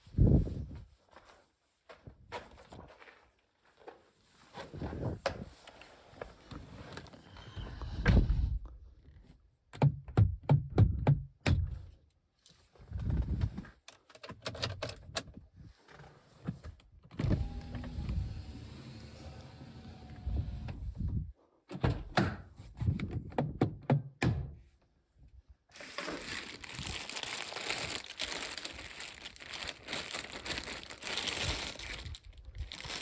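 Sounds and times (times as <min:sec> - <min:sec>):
clicks and knocks on car door: 0:09.7 - 0:11.8.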